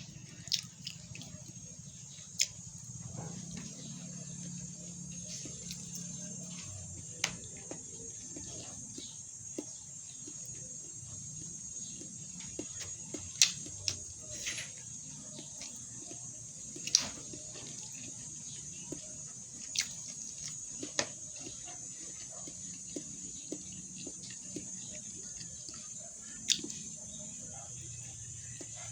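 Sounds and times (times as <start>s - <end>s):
wet chewing clicks: 0.0s - 14.1s, 14.8s - 28.9s.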